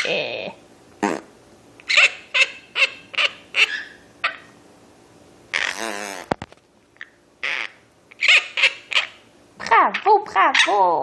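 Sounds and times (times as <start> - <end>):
fart: 1.0 - 1.3, 5.5 - 6.5
parrot squawk: 1.8 - 4.5, 5.5 - 6.3, 7.4 - 9.2, 9.9 - 10.8.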